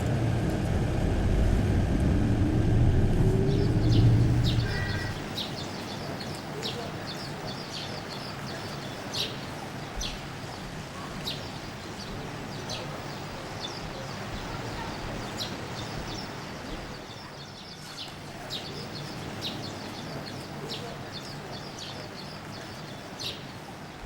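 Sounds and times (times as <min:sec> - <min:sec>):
steady background hiss: 0:00.0 - 0:24.0
birds twittering: 0:00.8 - 0:24.0
small birds chirping: 0:02.2 - 0:24.0.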